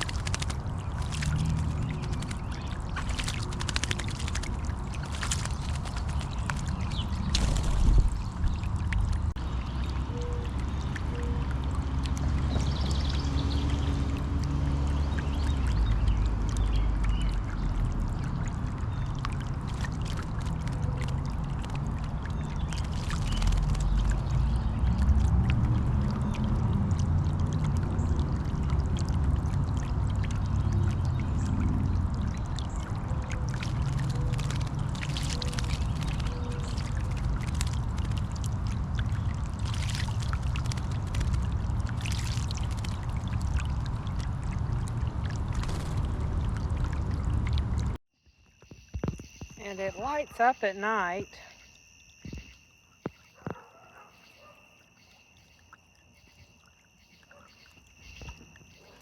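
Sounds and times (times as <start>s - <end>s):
fountain water splashing and trickling: 0.0s - 48.0s, 49.0s - 53.7s, 54.4s - 59.0s.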